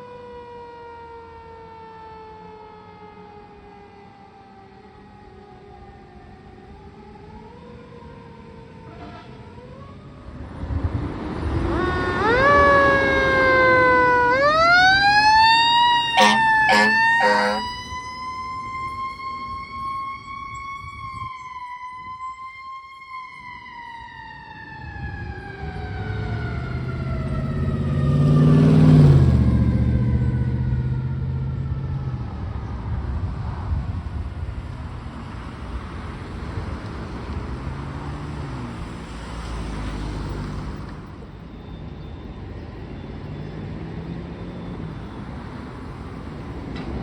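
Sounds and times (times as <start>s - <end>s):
fire engine siren: 0.0s - 47.0s
diesel engine rumbling: 14.2s - 18.1s
horn blasts: 16.1s - 17.9s.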